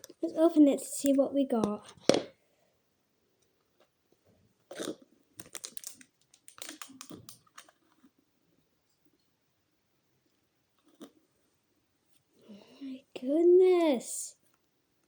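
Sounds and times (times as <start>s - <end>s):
plastic clicks and crackles: 5.4s - 8.1s.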